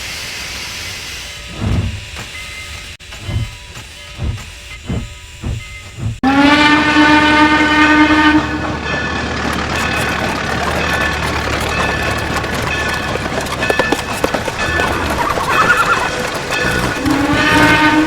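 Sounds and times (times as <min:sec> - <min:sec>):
steam locomotive chuffing: 0:00.0 - 0:18.0
train rumbling: 0:00.0 - 0:18.0
loud steam whistle: 0:06.2 - 0:09.0, 0:15.4 - 0:18.0.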